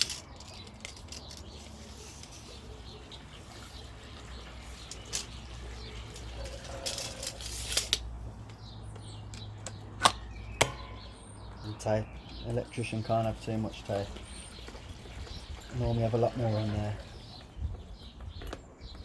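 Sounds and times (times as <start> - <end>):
tools rustling and scraping: 0.0 - 8.1
sharp tool clicks: 9.3 - 11.0.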